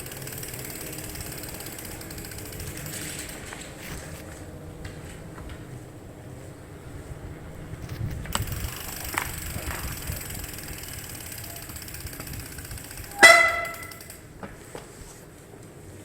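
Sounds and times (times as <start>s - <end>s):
faint rapid ticking: 0.0s - 3.5s, 8.3s - 14.3s
short loud ringing note: 13.1s - 14.1s.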